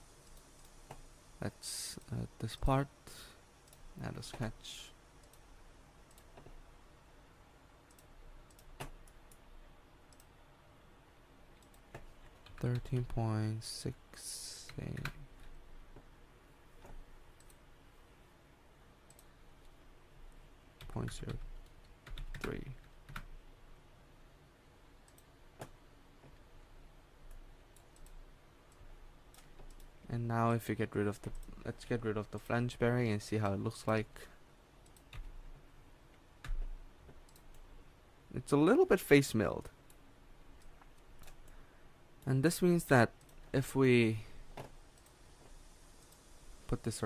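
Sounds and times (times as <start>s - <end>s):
computer mouse clicks: 5.2s - 6.6s, 7.8s - 9.5s, 10.1s - 10.3s, 11.5s - 13.2s, 16.8s - 17.6s, 19.1s - 19.8s, 25.0s - 26.4s, 27.3s - 30.0s, 34.8s - 35.4s, 36.1s - 37.7s, 40.6s - 41.6s, 43.2s - 43.4s, 44.6s - 45.2s.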